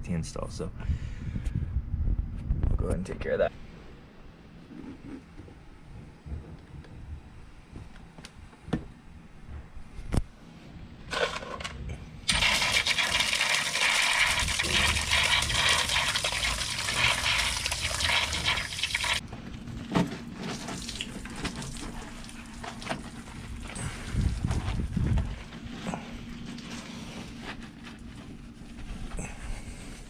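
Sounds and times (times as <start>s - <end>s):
water running hard: 12.3s - 19.2s.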